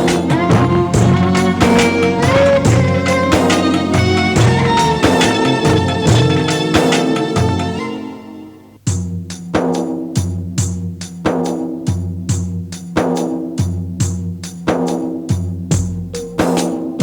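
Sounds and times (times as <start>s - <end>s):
steady percussive beat: 0.0s - 8.2s, 8.8s - 17.0s
sustained pitched notes: 0.0s - 8.7s
held music chord: 0.0s - 8.8s.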